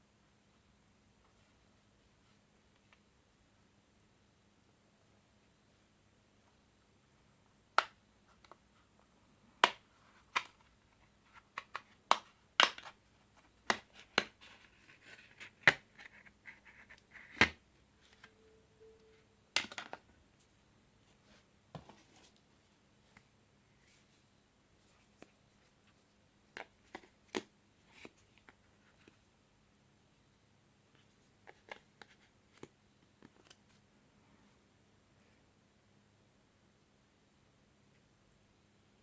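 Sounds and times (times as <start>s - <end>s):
brief low tone: 18.2s - 19.5s.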